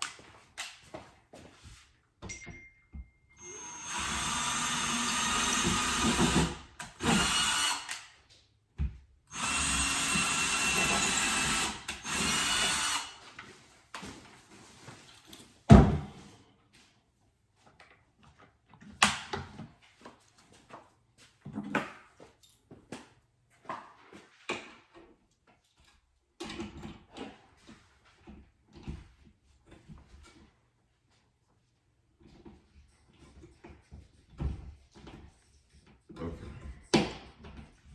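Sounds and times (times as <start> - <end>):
power drill running into wall: 3.4 - 8.1, 9.3 - 13.2.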